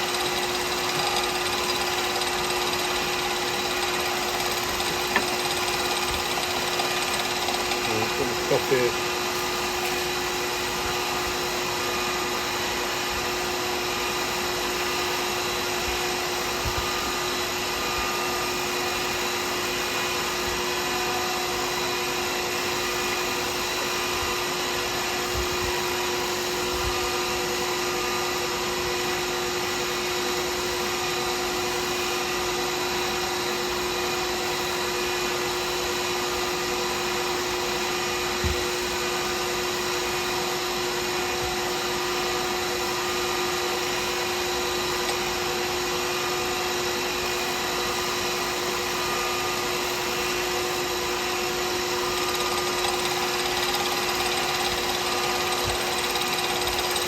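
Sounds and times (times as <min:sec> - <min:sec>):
machine motor whirring: 0:00.0 - 0:10.0, 0:52.0 - 0:57.0.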